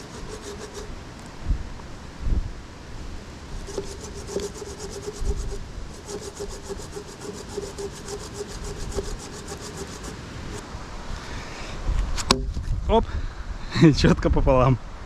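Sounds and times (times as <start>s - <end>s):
hand saw cutting log: 0.0s - 0.9s, 3.6s - 10.6s.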